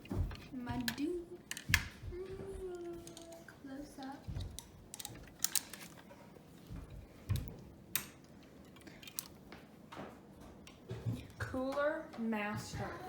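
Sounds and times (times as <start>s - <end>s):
computer parts clicking and knocking: 0.0s - 2.0s, 4.0s - 6.1s, 6.7s - 11.9s.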